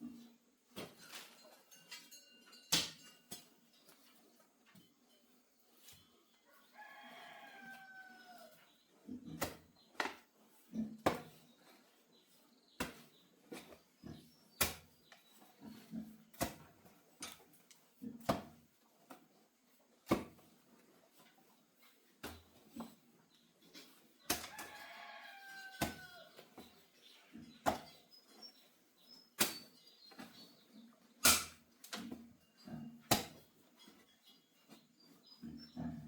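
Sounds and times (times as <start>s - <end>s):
rooster crowing: 6.6s - 8.6s, 24.5s - 26.3s
digging tool striking ground: 14.6s - 14.9s, 16.3s - 17.4s, 18.2s - 18.6s, 20.1s - 20.4s, 24.3s - 24.6s, 25.7s - 26.0s, 27.6s - 28.0s, 29.4s - 30.3s, 31.2s - 32.3s, 33.0s - 33.5s.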